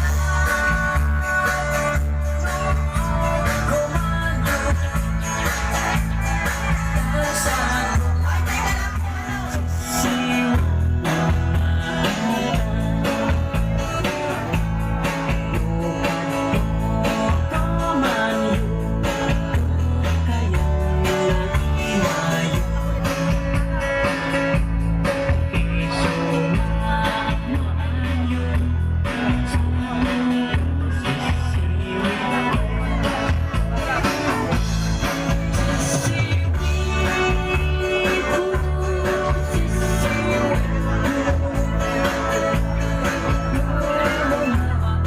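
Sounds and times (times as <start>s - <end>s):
singing: 0.0s - 24.4s, 25.5s - 45.0s.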